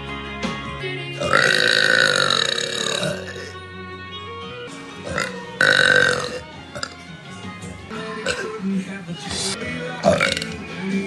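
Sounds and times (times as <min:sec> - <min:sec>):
background music: 0:00.0 - 0:11.0
long loud burp: 0:01.2 - 0:03.6, 0:05.0 - 0:07.0, 0:08.2 - 0:08.5, 0:10.0 - 0:10.6.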